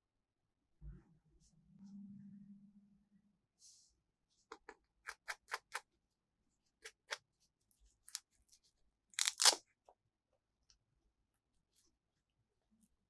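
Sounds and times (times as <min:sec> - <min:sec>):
packaging tearing crinkle: 0:09.2 - 0:09.6
plastic toy pieces clicking: 0:09.2 - 0:09.6.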